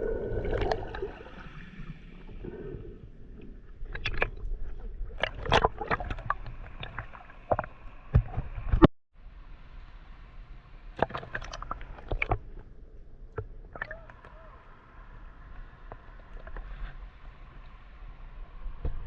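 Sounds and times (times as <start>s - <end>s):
water sloshing and splashing: 0.0s - 8.9s, 11.0s - 12.7s.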